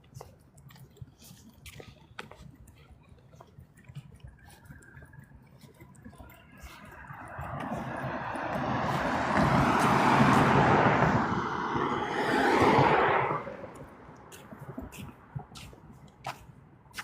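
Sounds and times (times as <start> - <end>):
vehicle passing by: 6.4 - 14.9.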